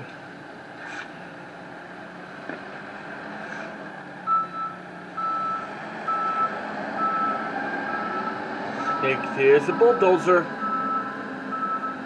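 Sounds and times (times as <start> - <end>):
diesel engine running: 0.0 - 12.0
reversing alarm beeps: 4.3 - 9.2, 9.8 - 12.0.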